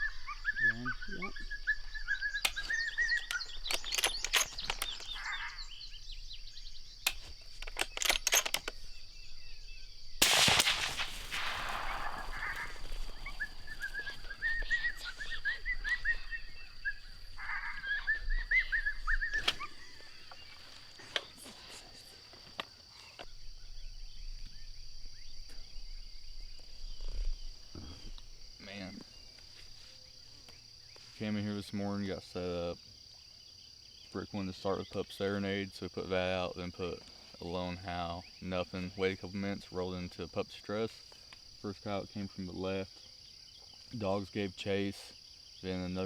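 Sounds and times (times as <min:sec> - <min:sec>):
high warbling cries: 0:00.0 - 0:06.0, 0:10.5 - 0:20.2
high insect drone: 0:00.0 - 0:46.0
gunshot with echo: 0:10.2 - 0:13.4.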